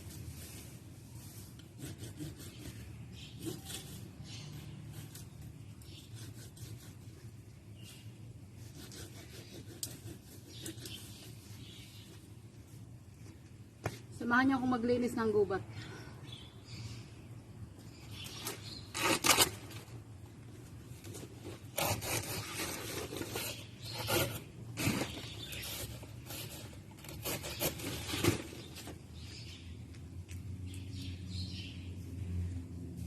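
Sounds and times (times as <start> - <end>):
grass and brush cut by hand: 18.4 - 19.8, 21.2 - 28.7.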